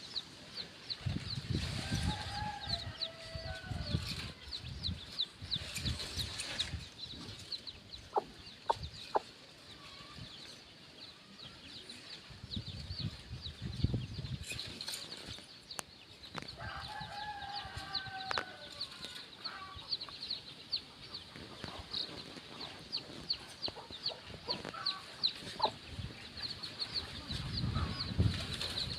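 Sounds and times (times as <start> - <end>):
baby chicks peeping: 0.0 - 28.9
hen clucking softly: 8.1 - 9.3, 23.7 - 25.8.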